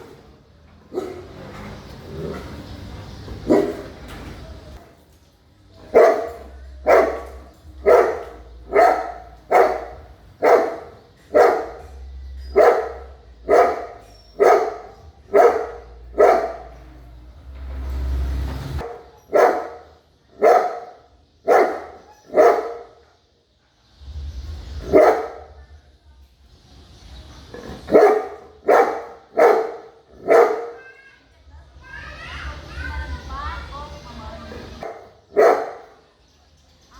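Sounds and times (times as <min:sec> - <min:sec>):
big dog barking: 0:00.0 - 0:02.6, 0:03.3 - 0:04.2, 0:05.8 - 0:17.1, 0:18.8 - 0:23.1, 0:24.7 - 0:25.7, 0:27.5 - 0:31.0, 0:34.7 - 0:36.1.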